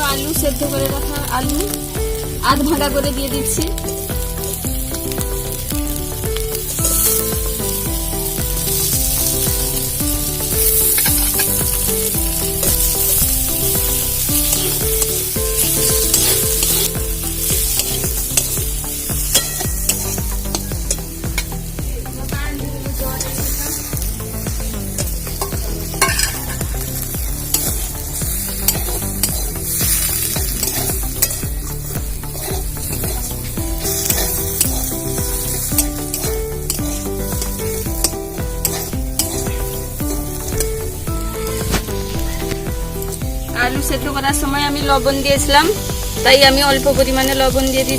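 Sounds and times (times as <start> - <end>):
background music: 0.0 - 47.9
potatoes sizzling in oil: 0.0 - 47.9
spatula clicking: 10.5 - 21.6, 32.3 - 40.4
spatula scraping through food: 28.5 - 37.5, 38.6 - 39.5.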